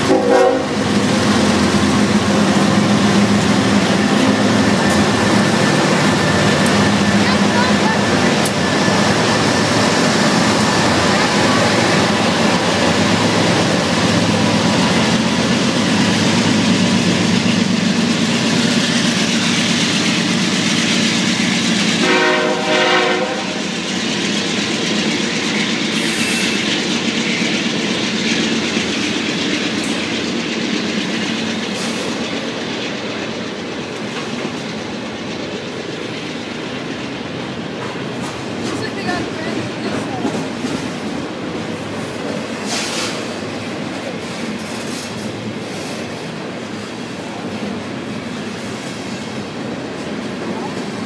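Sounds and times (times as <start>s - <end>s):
locomotive air horn blast: 0.0s - 0.8s, 22.0s - 23.6s
freight train rumbling on rails: 0.0s - 51.0s.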